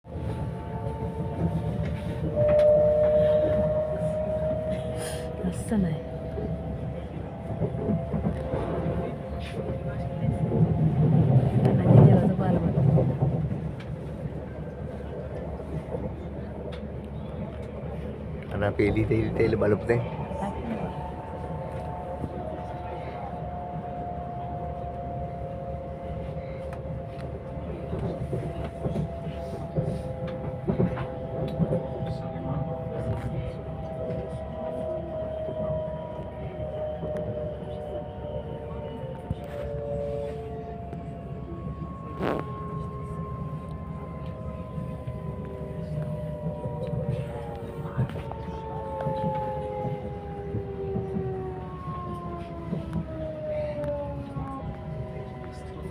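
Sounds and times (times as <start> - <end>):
train low rumble: 0.0 - 55.9
two-note whine: 0.3 - 10.6, 26.6 - 55.9.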